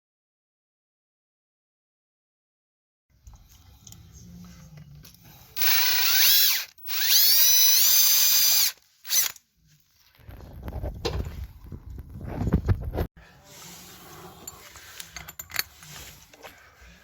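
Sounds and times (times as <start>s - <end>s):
power drill motor whine: 5.6s - 9.3s.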